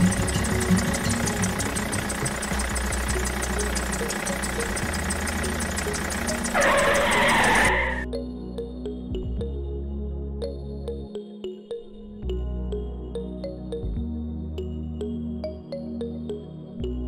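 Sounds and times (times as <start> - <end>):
tractor engine idling: 0.0 - 8.0.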